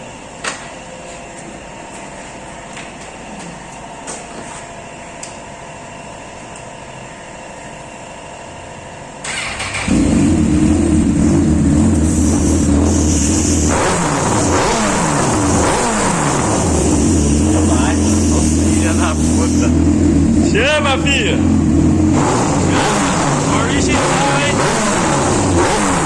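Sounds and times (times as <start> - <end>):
motorcycle engine running loud: 9.4 - 20.8, 21.4 - 26.0.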